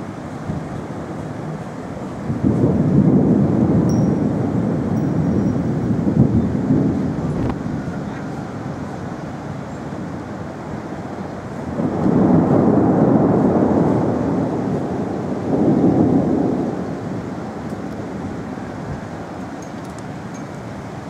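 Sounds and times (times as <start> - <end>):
rolling thunder: 0.0 - 9.4, 10.7 - 19.3.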